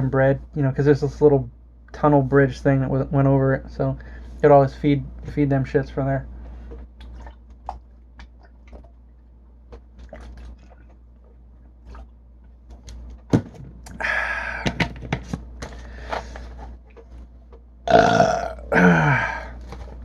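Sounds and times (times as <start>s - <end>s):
man drinking soda gulps: 13.8s - 14.9s, 17.9s - 20.0s
man burping: 13.9s - 14.8s, 17.9s - 19.6s.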